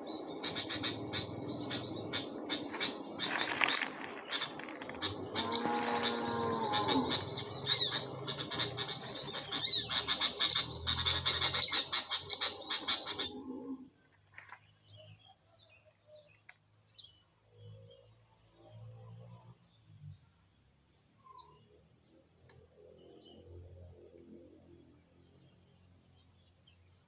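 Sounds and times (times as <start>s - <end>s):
birds chirping and trilling: 0.0s - 27.0s
bird squawk descending: 0.6s - 13.8s.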